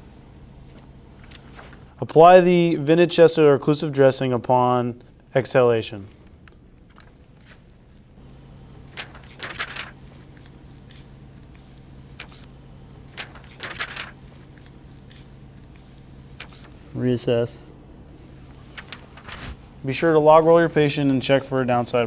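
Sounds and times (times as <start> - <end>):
steady low hum: 0.0 - 22.0
rustling handling sounds: 0.6 - 2.0, 6.9 - 17.0, 18.2 - 21.4.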